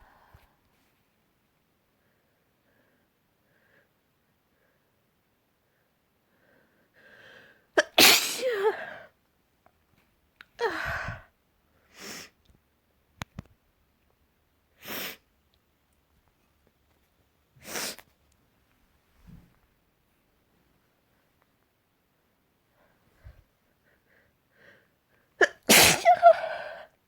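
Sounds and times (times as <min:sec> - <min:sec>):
person sneezing: 0:07.8 - 0:09.0, 0:25.4 - 0:26.9.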